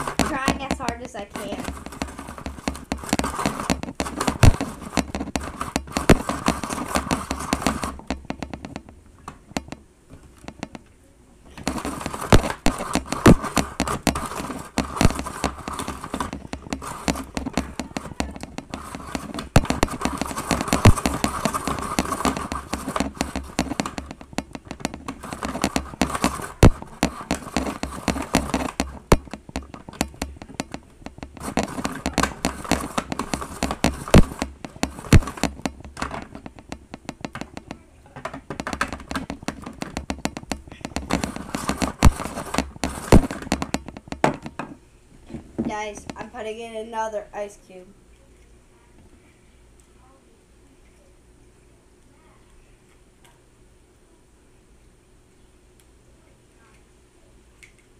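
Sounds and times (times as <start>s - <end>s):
ice shaver rattling grind: 0.0s - 8.8s, 11.6s - 44.4s.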